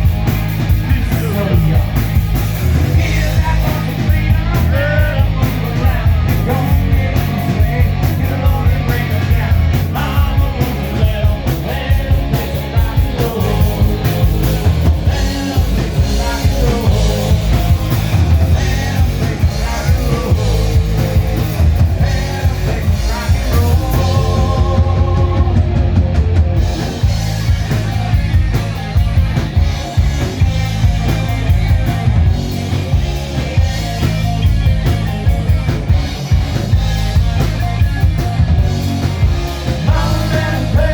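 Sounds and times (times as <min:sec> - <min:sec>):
loud rock music: 0:00.0 - 0:40.9
steady bass: 0:00.0 - 0:40.9
person singing: 0:02.9 - 0:25.9, 0:39.7 - 0:40.9.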